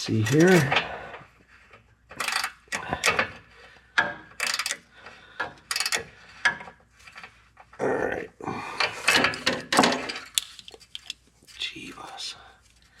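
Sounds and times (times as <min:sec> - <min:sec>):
ratchet wrench clicking: 0:02.2 - 0:03.2, 0:04.3 - 0:04.9, 0:05.6 - 0:06.1.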